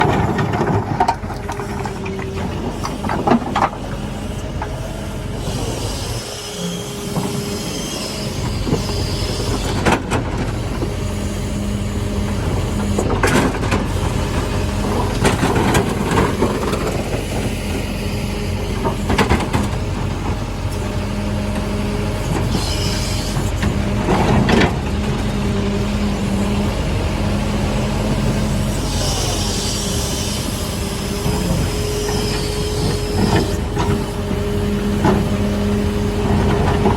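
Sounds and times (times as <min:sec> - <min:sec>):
bucket and rubble clanking: 0:00.0 - 0:03.9
excavator diesel engine: 0:00.0 - 0:36.9.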